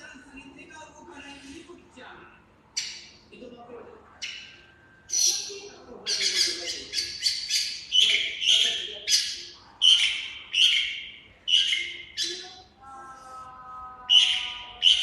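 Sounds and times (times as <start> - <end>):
bird harsh raspy chirps: 2.7 - 3.3, 4.2 - 12.7, 14.1 - 15.0.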